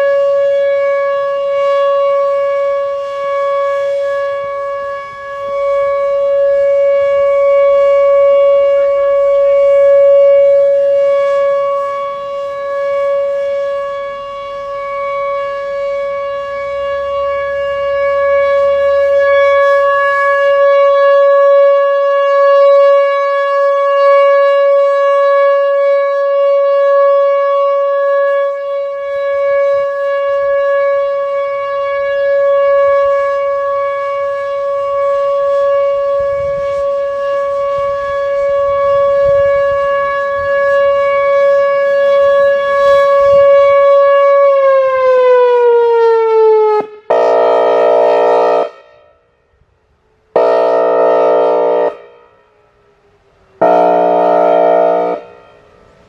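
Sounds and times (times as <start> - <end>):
airhorn blasts: 0.0 - 49.6, 50.2 - 56.0
electronic siren alert tone: 50.4 - 52.2, 53.6 - 55.8.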